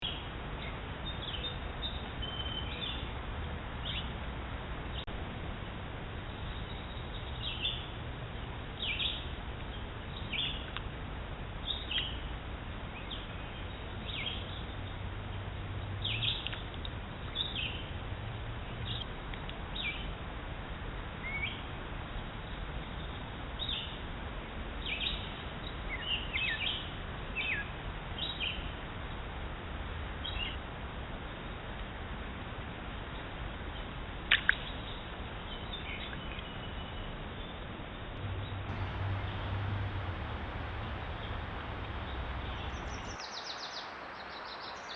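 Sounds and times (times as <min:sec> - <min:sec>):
outdoor background hiss: 0:38.2 - 0:44.9
small birds chirping: 0:38.7 - 0:44.9.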